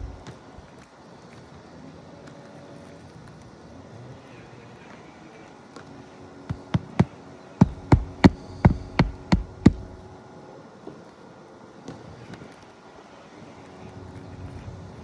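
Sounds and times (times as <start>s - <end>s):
hammer hitting nail through shingle: 6.5s - 10.0s.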